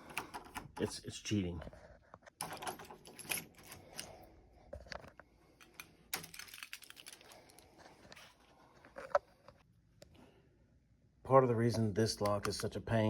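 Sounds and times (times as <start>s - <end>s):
small metal parts clicking: 5.6s - 7.6s.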